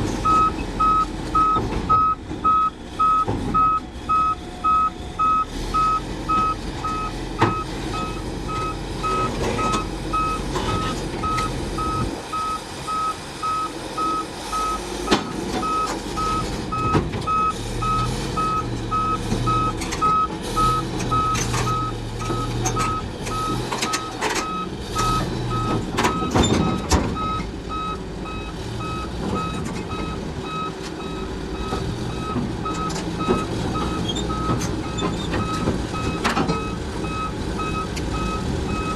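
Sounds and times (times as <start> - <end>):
diesel engine running: 0.0 - 38.9
backup alarm beeping: 0.2 - 38.9.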